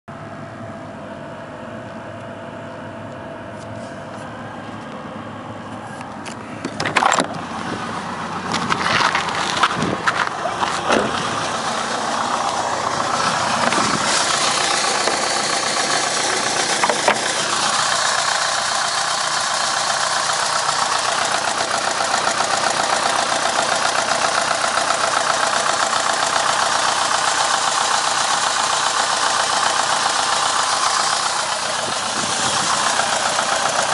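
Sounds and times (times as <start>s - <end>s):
engine idling with even knock: 5.7s - 33.9s
loud irregular clatters and knocks: 13.6s - 17.4s.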